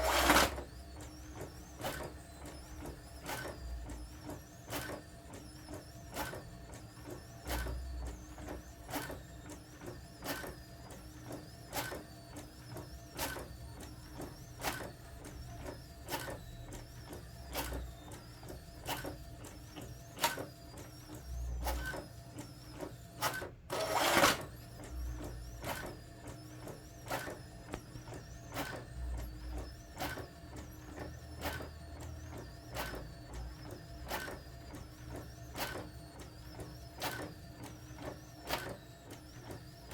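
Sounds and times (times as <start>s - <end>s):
loud noisy printer burst: 0.0s - 0.6s, 23.7s - 24.6s
print head clicking: 0.0s - 0.6s, 23.7s - 24.5s
printer motor hum: 0.0s - 39.9s.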